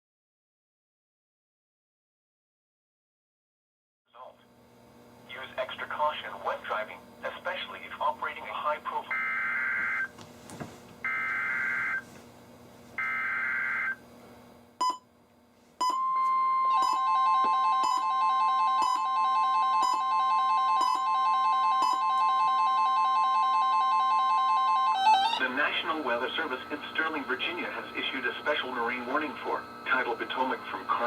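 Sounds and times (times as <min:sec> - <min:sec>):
steady warning alarm tone: 0:09.1 - 0:10.1, 0:11.0 - 0:12.1, 0:13.0 - 0:14.0, 0:15.8 - 0:31.0.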